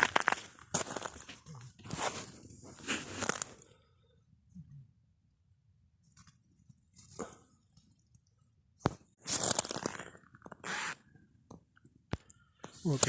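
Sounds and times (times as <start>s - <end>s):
boots crunching in frozen snow: 0.0s - 3.6s, 9.2s - 10.0s.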